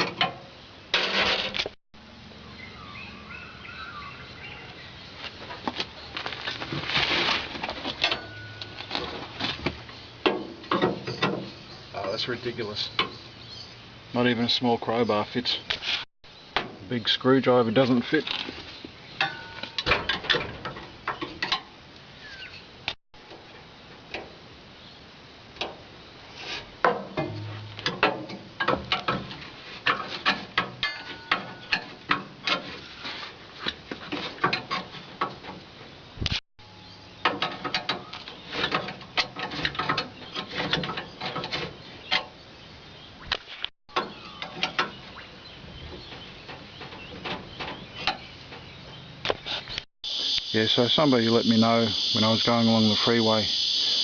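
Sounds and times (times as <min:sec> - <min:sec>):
hand tools clicking and scraping: 0:26.4 - 0:35.7, 0:37.2 - 0:42.4.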